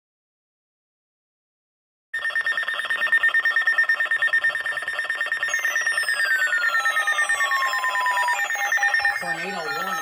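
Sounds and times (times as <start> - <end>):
pulsing high-pitched alarm beep: 2.2 - 10.0.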